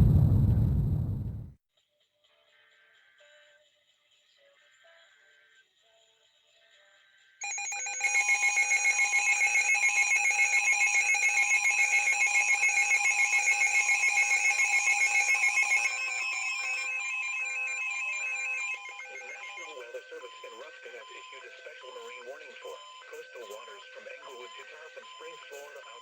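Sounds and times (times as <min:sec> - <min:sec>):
electronic alarm pulsing: 0:07.4 - 0:26.0.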